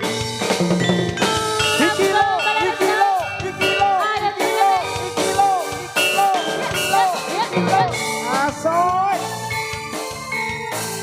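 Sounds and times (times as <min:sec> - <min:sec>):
mallet percussion tones: 0:00.0 - 0:11.0
steady drum beat: 0:00.0 - 0:11.0
person singing: 0:01.2 - 0:09.1.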